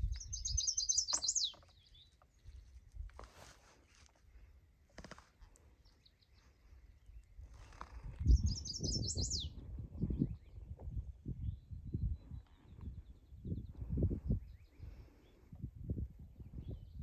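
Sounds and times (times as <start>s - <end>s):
faint bird chirps: 0.0s - 2.8s, 8.2s - 10.6s
songbird singing: 0.0s - 2.8s, 5.6s - 15.6s
low rumbling on microphone: 7.4s - 17.0s.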